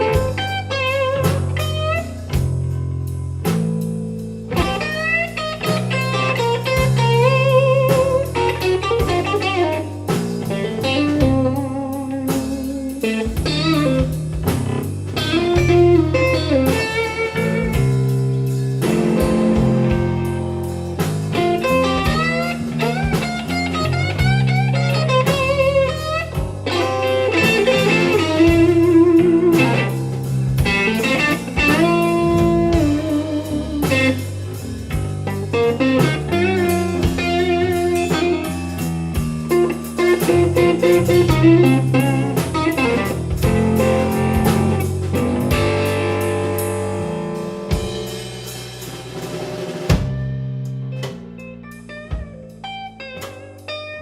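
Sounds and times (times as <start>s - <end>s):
bass: 0.0s - 54.0s
drums: 0.0s - 54.0s
electric guitar solo: 4.5s - 14.2s, 15.1s - 18.1s, 21.4s - 34.5s, 35.2s - 48.1s, 50.9s - 54.0s.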